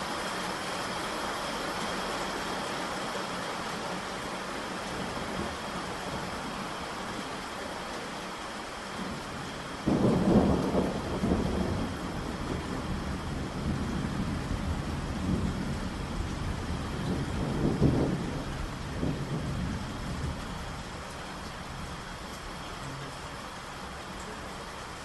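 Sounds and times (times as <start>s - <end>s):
heavy rain: 0.0s - 25.0s
rolling thunder: 9.0s - 21.0s
thunderclap: 9.8s - 20.4s.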